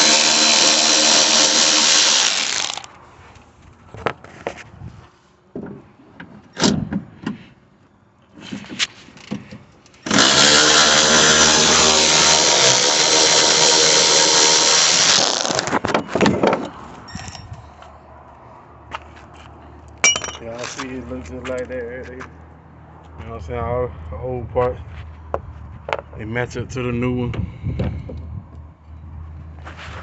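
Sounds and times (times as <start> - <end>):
power tool motor whining: 0.0 - 2.9, 10.0 - 15.7.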